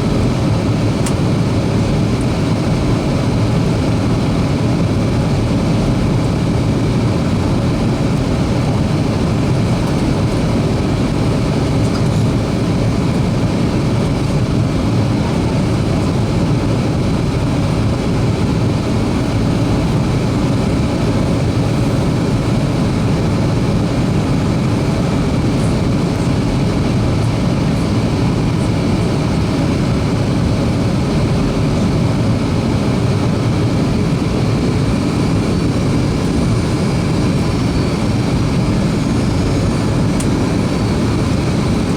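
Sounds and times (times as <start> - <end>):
airflow over fuselage: 0.0 - 41.9
airplane engines rumbling: 0.0 - 41.9
faint steady whine: 0.0 - 41.9.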